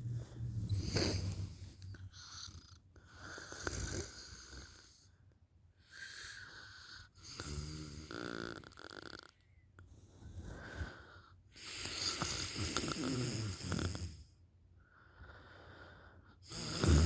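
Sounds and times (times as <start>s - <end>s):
woman snoring: 0.0s - 2.0s, 16.5s - 17.0s.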